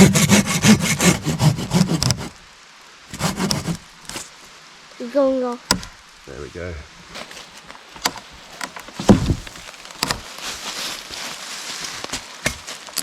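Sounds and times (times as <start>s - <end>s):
saw blade knocking on wood: 0.0s - 2.3s, 3.1s - 4.2s
hand saw rasping through branch: 0.0s - 2.4s, 3.1s - 4.3s
deep thump: 9.0s - 9.5s.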